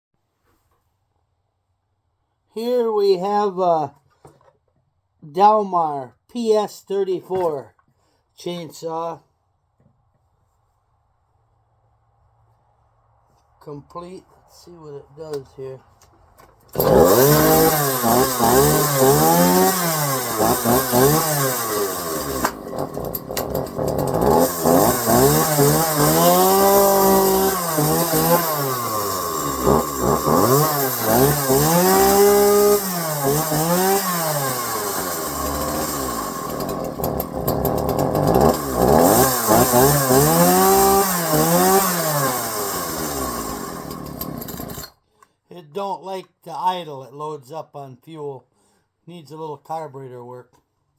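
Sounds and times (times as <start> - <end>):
chainsaw revving: 16.7 - 44.9.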